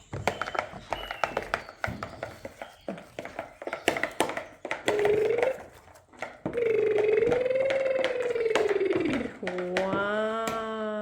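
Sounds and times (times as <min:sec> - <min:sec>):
person humming: 0:06.5 - 0:11.0.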